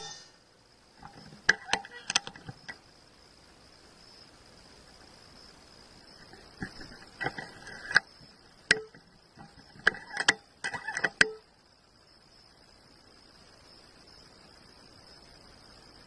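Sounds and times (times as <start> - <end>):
air rifle clicks and metallic rattles: 1.0 - 2.8, 8.7 - 11.4.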